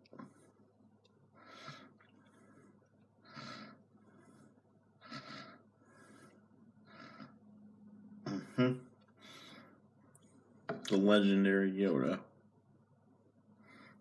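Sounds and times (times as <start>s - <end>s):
low steady hum: 0.0s - 14.0s
soft breath puffs: 0.1s - 7.6s, 8.3s - 10.6s, 13.5s - 14.0s.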